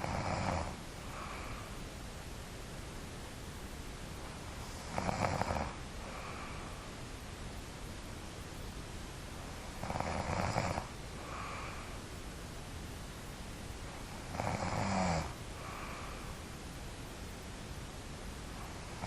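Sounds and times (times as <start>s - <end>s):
person snoring: 0.0s - 1.6s, 4.8s - 6.6s, 9.8s - 11.9s, 14.2s - 16.2s
soft breath: 0.6s - 2.1s, 4.2s - 7.1s, 10.8s - 12.3s, 15.5s - 16.6s.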